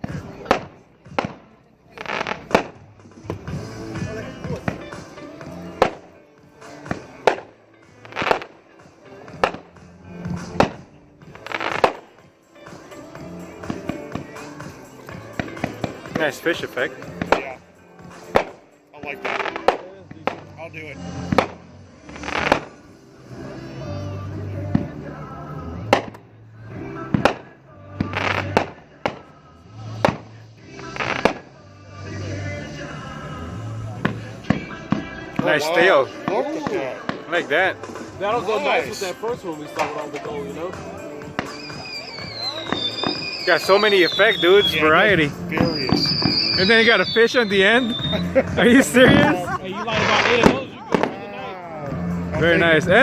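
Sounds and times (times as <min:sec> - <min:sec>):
firework bangs: 0:00.0 - 0:23.0, 0:25.8 - 0:31.6, 0:33.5 - 0:38.2, 0:41.2 - 0:52.0
background music: 0:00.0 - 0:53.0
firework hissing bursts: 0:02.0 - 0:02.8, 0:08.0 - 0:08.6, 0:10.4 - 0:12.2, 0:19.2 - 0:23.5, 0:29.7 - 0:32.1, 0:41.3 - 0:48.3
firework shells bursting: 0:06.8 - 0:08.6, 0:10.5 - 0:12.2, 0:17.2 - 0:20.6, 0:41.3 - 0:44.4.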